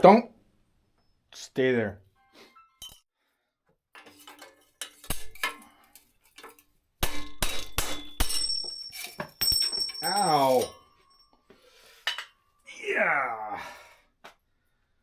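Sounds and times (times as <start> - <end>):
metal bicycle parts clinking: 2.8 - 3.0, 3.9 - 12.6
sharp ringing metal strikes: 7.0 - 11.4.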